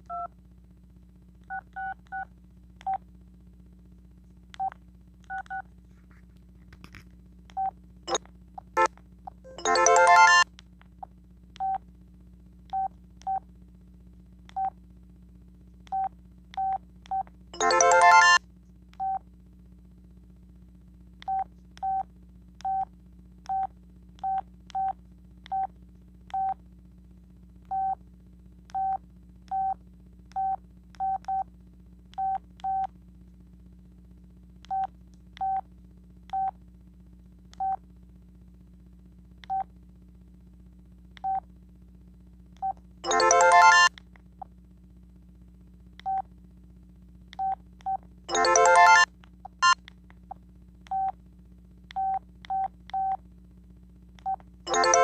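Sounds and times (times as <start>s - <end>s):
faint low hum: 0.0s - 55.0s
phone ringtone: 9.5s - 10.4s, 17.6s - 18.4s, 43.0s - 43.9s, 48.3s - 49.8s, 54.7s - 55.0s
phone key beeps: 48.3s - 49.8s.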